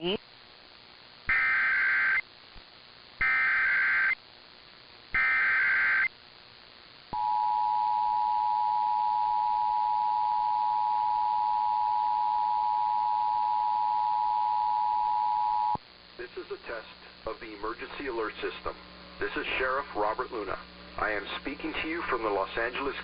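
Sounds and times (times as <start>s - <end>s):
digital data bursts: 1.3s - 2.2s, 3.2s - 4.2s, 5.1s - 6.1s
steady two-tone attention signal: 7.2s - 15.8s.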